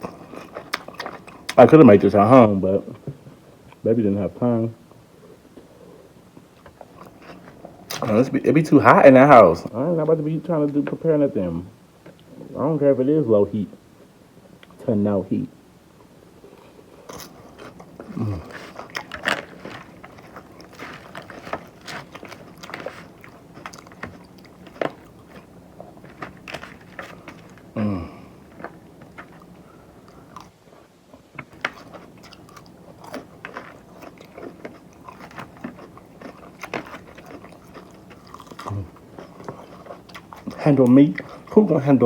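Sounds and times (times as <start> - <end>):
person chewing crispy food: 0.0 - 1.6, 5.3 - 8.4, 16.4 - 30.6, 31.5 - 42.0.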